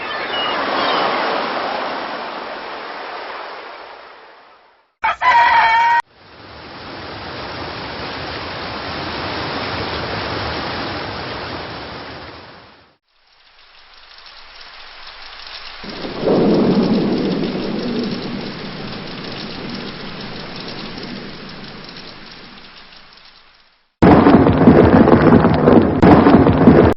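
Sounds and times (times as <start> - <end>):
rooster crowing: 5.0 - 6.1
rain hissing: 6.1 - 24.0
deep thunder rumble: 15.7 - 23.4, 24.0 - 26.9.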